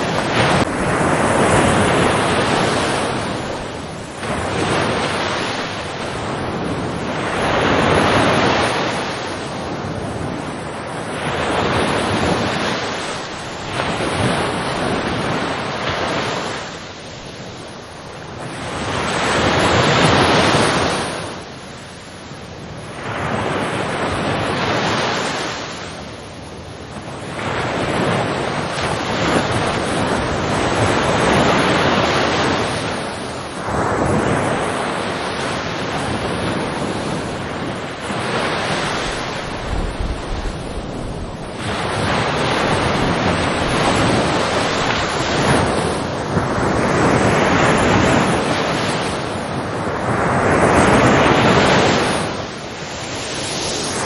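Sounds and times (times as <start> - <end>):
ocean waves breaking ashore: 0.0 - 54.0.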